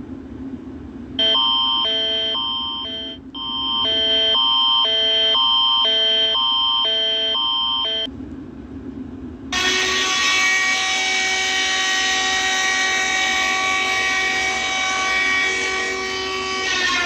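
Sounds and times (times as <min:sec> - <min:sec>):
alternating two-note beeping: 0:01.2 - 0:08.1
loud alarm blare: 0:01.2 - 0:08.1, 0:09.5 - 0:17.0.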